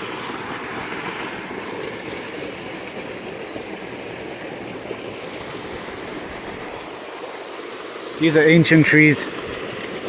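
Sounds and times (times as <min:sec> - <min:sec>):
stream and waterfall rushing: 0:00.0 - 0:10.0.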